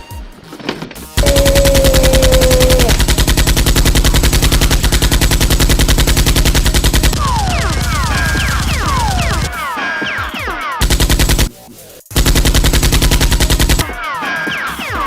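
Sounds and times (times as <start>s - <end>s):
automatic gunfire: 1.2s - 9.5s, 10.8s - 11.5s, 12.1s - 14.0s.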